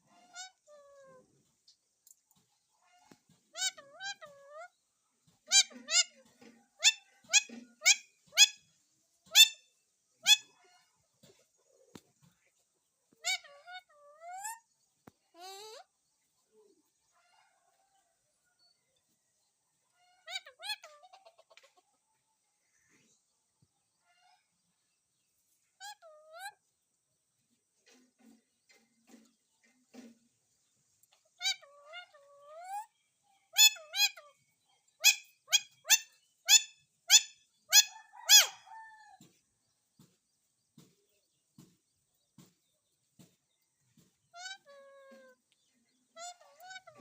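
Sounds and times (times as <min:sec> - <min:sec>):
parrot calling: 0:00.1 - 0:01.2, 0:03.5 - 0:04.7, 0:05.4 - 0:08.7, 0:09.3 - 0:10.8, 0:13.2 - 0:14.6, 0:31.4 - 0:32.9, 0:33.5 - 0:34.4, 0:35.0 - 0:39.0, 0:44.3 - 0:45.4, 0:46.1 - 0:47.0
faint soft ticks: 0:45.4 - 0:45.7.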